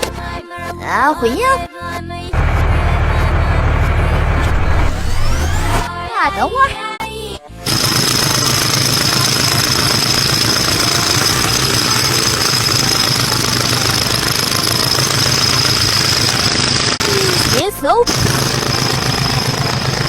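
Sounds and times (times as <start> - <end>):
toy motor rattling drone: 7.7 - 20.0.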